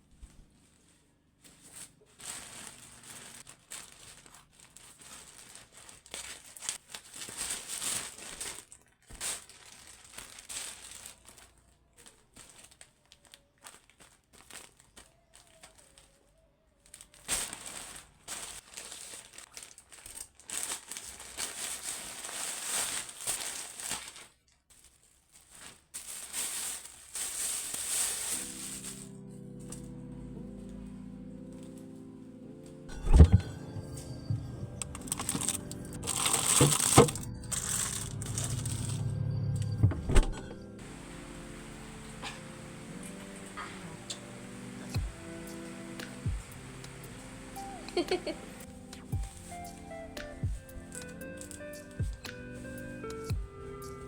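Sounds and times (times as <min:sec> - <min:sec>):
packaging crinkling: 0:00.4 - 0:29.9, 0:32.9 - 0:39.7, 0:40.7 - 0:54.0
packaging tearing: 0:34.8 - 0:39.1, 0:40.8 - 0:52.0.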